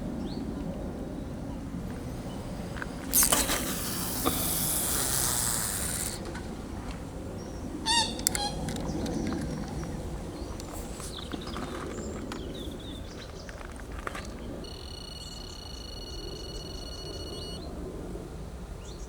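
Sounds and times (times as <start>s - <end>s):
steady high-pitched tone: 1.8s - 6.3s, 14.6s - 17.6s
bird chirps: 7.9s - 9.2s, 14.6s - 17.7s.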